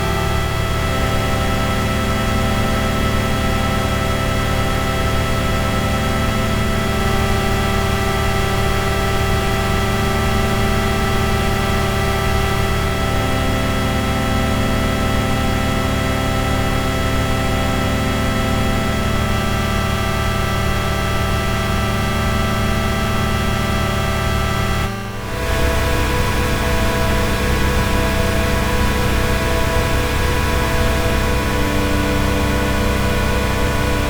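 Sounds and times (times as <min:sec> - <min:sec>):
ambient drone music: 0:24.1 - 0:34.0.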